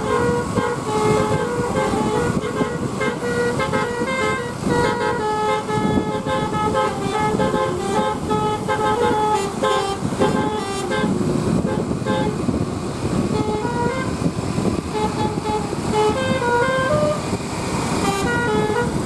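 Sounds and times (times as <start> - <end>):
bus horn playing a tune: 0.0 - 19.0
engine rumble: 0.0 - 19.0
road noise: 0.0 - 19.0.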